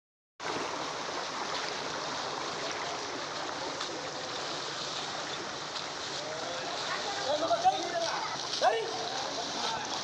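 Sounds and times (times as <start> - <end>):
river water rushing: 0.4 - 10.0.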